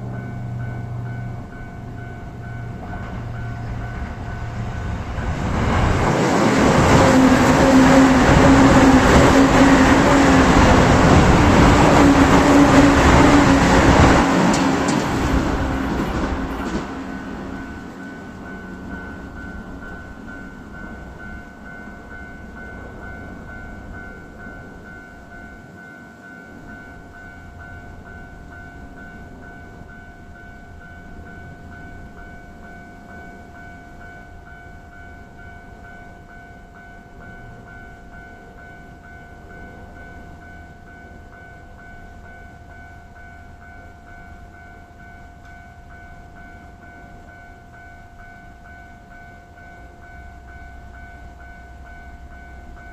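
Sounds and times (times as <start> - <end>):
level-crossing warning bell: 0.0 - 52.9
passing train rumble: 0.0 - 52.9.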